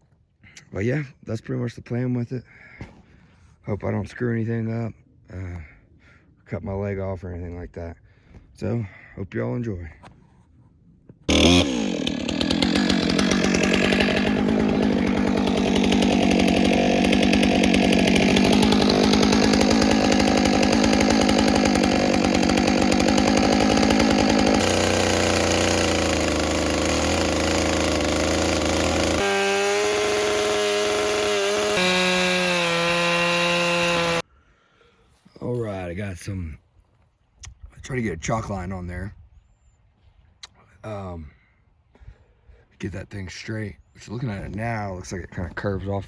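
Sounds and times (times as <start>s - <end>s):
chainsaw cutting into log: 11.3s - 34.2s.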